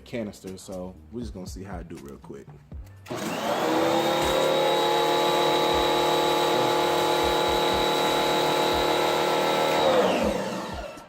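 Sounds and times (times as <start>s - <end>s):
electric pressure washer running: 3.1s - 11.0s.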